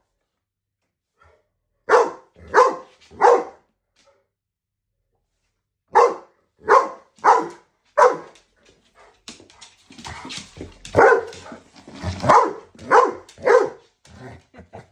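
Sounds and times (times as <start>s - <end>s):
dog barking: 1.9s - 3.6s, 5.9s - 8.4s, 10.9s - 11.5s, 12.2s - 13.8s.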